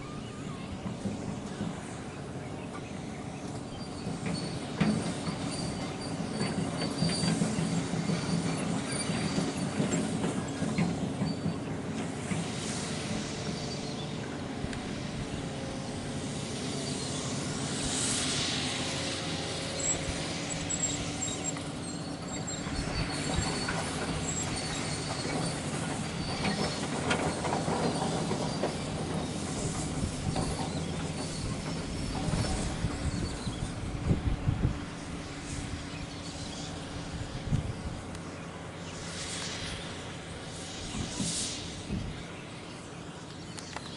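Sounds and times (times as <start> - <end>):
model excavator motors whining: 0.0 - 12.4, 18.8 - 38.9
thin high squeals: 3.7 - 11.6, 16.6 - 33.8.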